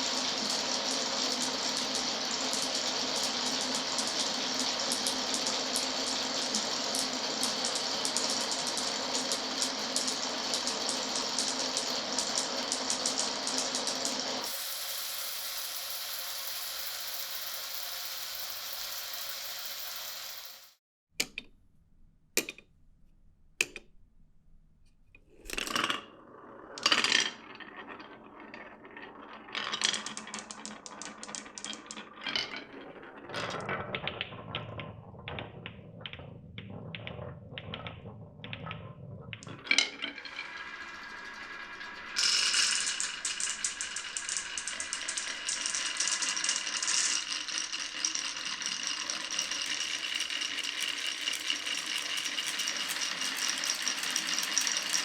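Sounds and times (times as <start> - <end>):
marbles rolling: 14.4 - 20.8, 25.3 - 55.0
marbles clattering together: 25.3 - 55.0
marbles clicking on wooden run: 25.5 - 55.0.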